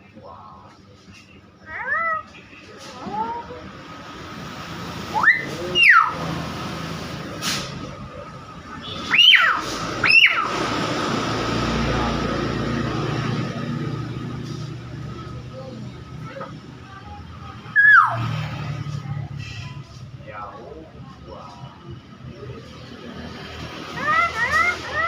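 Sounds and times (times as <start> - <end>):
bird whistled calls: 5.1 - 6.2, 17.8 - 18.2.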